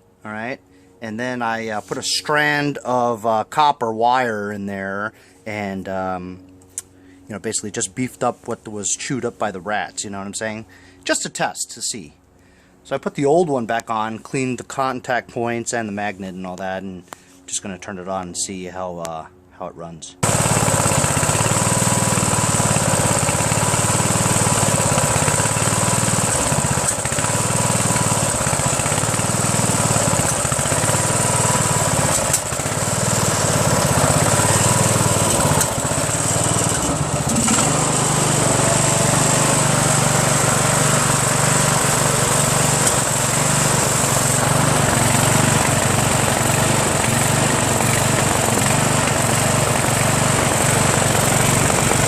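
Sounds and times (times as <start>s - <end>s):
lawn tractor engine running: 20.2s - 52.0s.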